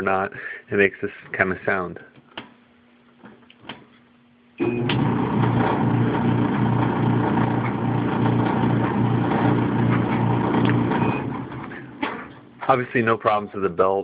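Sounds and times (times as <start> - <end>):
clothes dryer pulsing hum: 4.6 - 13.1.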